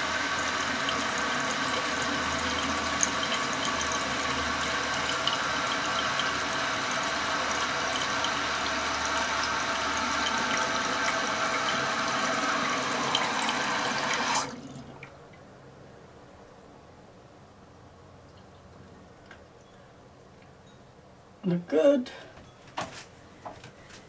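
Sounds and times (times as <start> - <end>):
toilet tank refilling: 0.0 - 15.2
water trickling: 0.0 - 15.5
water drips: 14.4 - 15.5.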